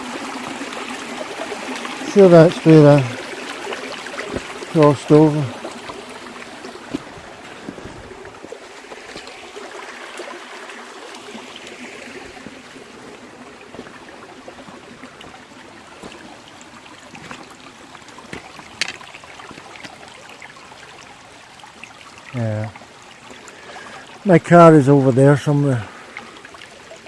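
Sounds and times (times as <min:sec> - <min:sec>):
river rushing over rocks: 0:00.0 - 0:20.1.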